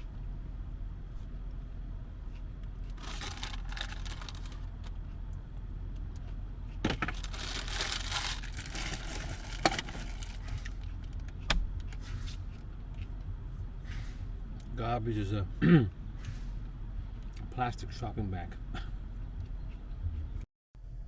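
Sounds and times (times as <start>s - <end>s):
steady low hum: 0.0s - 21.0s
plastic bag rustling and crinkling: 3.0s - 4.7s, 7.0s - 10.9s.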